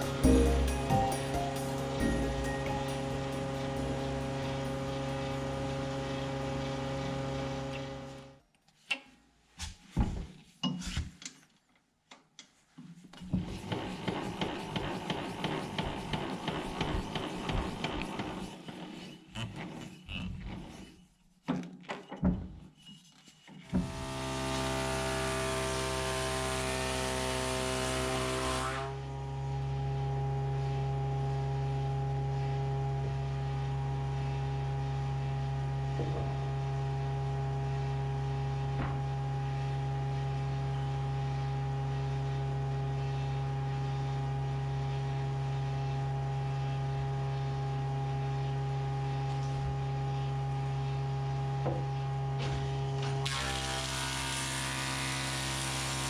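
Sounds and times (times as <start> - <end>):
power tool motor humming: 23.8 - 28.9, 53.2 - 56.0.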